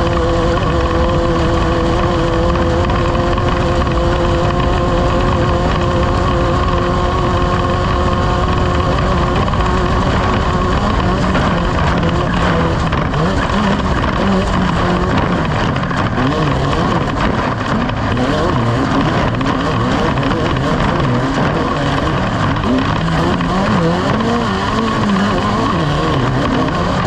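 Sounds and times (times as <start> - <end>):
off-road vehicle engines running: 0.0 - 27.0.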